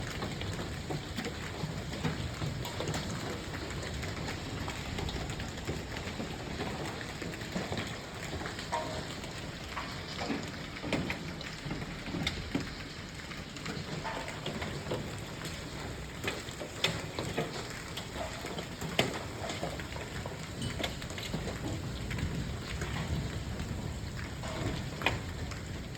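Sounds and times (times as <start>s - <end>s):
hail and rain hissing: 0.0s - 25.9s.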